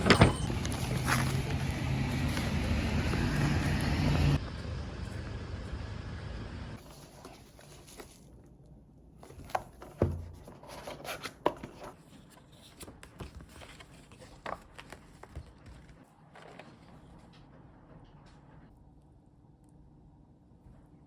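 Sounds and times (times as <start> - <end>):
objects being handled: 0.0 - 4.4.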